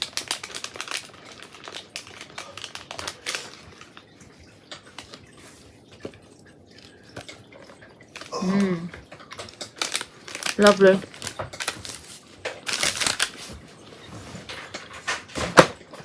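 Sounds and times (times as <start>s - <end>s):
packet being handled: 0.0s - 4.1s, 9.2s - 13.6s
popcorn crackling being eaten: 6.7s - 13.5s.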